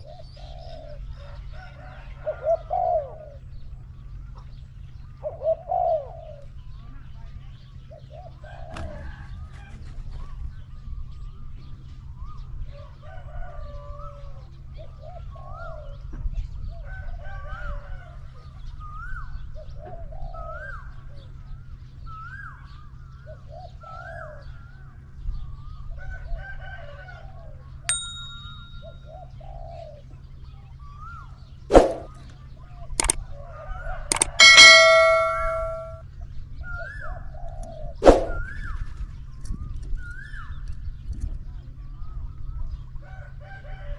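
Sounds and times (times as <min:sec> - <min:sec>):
doves cooing: 0:00.0 - 0:03.5, 0:05.2 - 0:06.6, 0:28.8 - 0:31.2
sharp metallic ping: 0:27.9 - 0:29.0, 0:34.1 - 0:36.0
bird chirping: 0:34.1 - 0:36.0.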